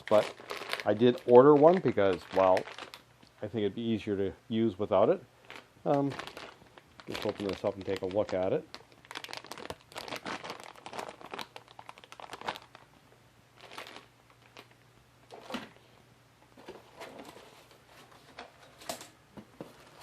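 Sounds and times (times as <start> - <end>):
plastic packaging crinkling and tearing: 0.0 - 3.1, 5.4 - 13.0, 13.6 - 15.6.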